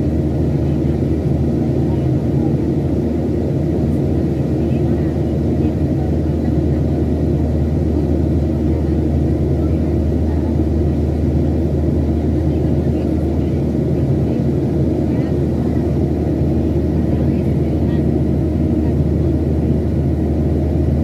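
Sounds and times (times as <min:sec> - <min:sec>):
airplane cabin drone: 0:00.0 - 0:21.0.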